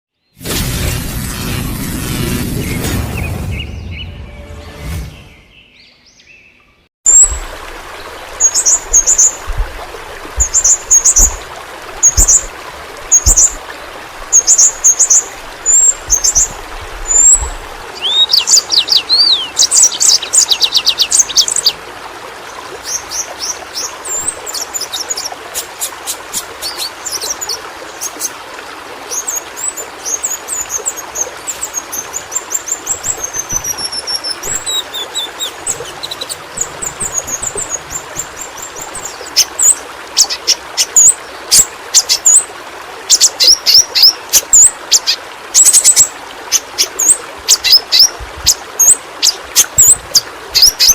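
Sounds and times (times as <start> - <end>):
bird singing: 5.1 - 7.4, 18.0 - 21.8, 32.4 - 42.4.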